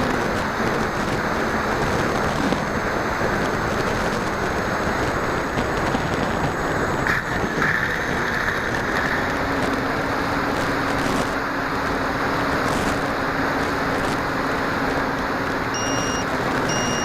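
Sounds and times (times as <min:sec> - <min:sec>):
air rush and motor noise: 0:00.0 - 0:17.0
faint motor and propeller tone: 0:00.0 - 0:17.0.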